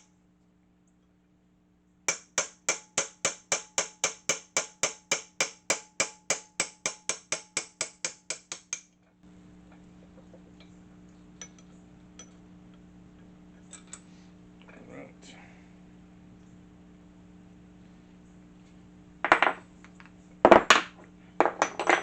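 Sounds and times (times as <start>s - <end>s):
hammer striking metal: 2.1s - 8.9s.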